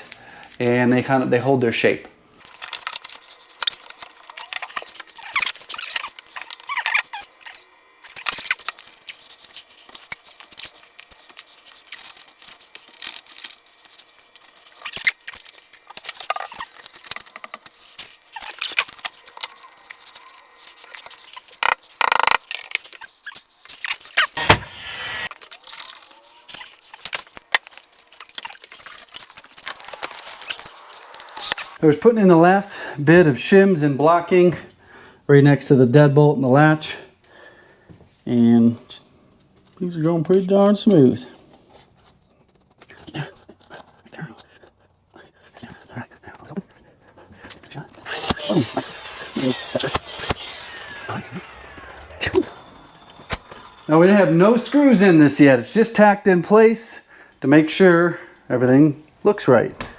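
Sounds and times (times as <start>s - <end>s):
plastic shims clicking and scraping: 2.4s - 24.4s, 25.3s - 31.8s, 41.5s - 53.8s.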